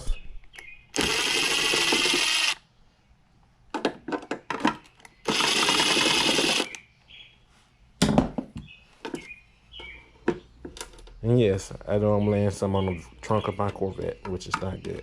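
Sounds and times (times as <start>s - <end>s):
power drill spinning: 0.9s - 2.6s, 5.2s - 6.8s.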